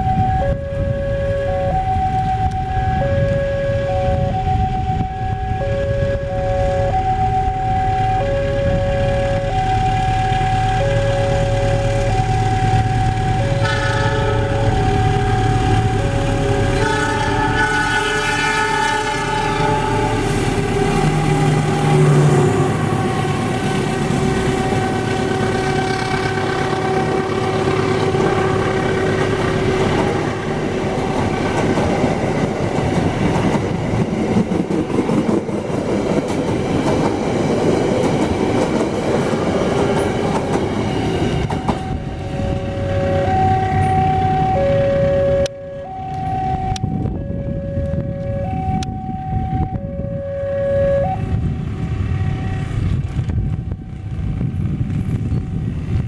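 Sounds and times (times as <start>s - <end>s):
level crossing alarms: 0.0s - 31.3s, 32.4s - 51.4s
train wheels rumbling on rails: 0.0s - 56.0s
train horn blast: 0.2s - 31.2s, 40.9s - 53.0s.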